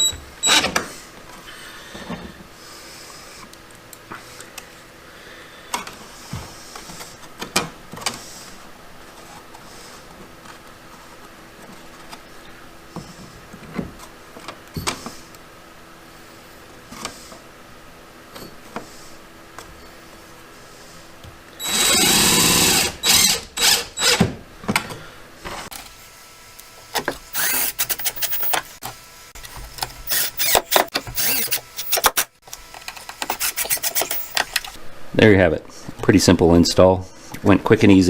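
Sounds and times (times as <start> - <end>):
power screwdriver driving screw: 21.6 - 24.2, 27.0 - 34.8.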